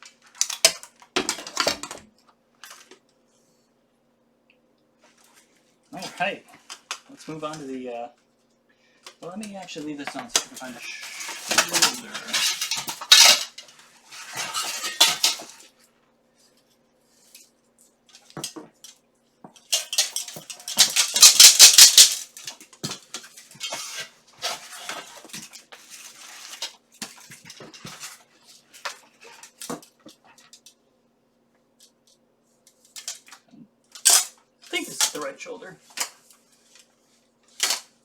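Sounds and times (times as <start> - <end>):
steel armour plates clattering: 10.6 - 15.6, 19.8 - 22.3.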